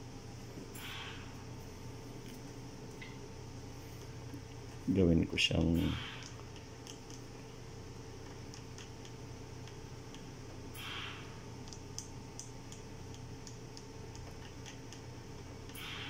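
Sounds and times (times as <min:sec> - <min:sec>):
ventilator hum: 0:00.0 - 0:16.0
light irregular ticks: 0:05.6 - 0:07.6, 0:08.2 - 0:10.3, 0:11.6 - 0:15.8.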